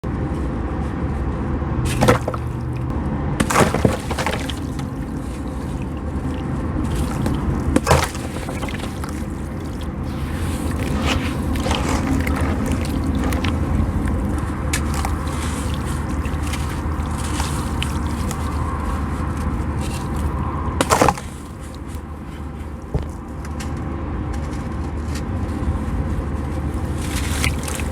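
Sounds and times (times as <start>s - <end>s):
dry sand cracking: 1.8s - 22.8s, 26.6s - 27.9s
gritty sand crackles: 1.8s - 22.9s, 24.4s - 27.9s.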